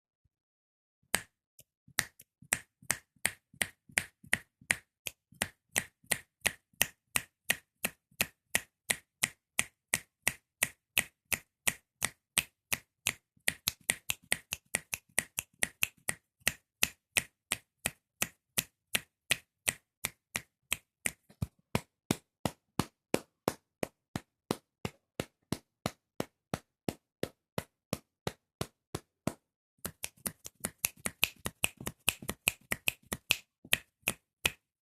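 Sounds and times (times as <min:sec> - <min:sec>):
fingers snapping: 0:02.0 - 0:21.2, 0:29.8 - 0:34.6.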